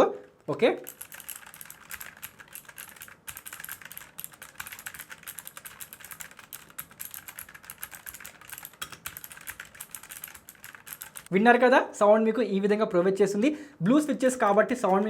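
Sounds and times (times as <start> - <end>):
mechanical keyboard typing: 0.8 - 11.3.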